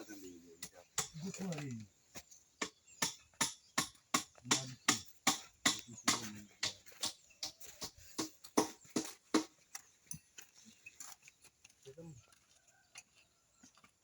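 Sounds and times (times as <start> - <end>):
sharp evenly spaced knocks: 0.6 - 10.2.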